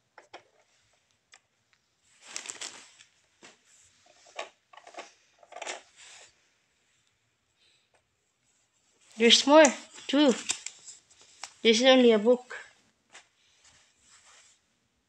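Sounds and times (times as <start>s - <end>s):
rustling: 1.7s - 7.1s, 8.4s - 11.7s, 12.7s - 14.7s.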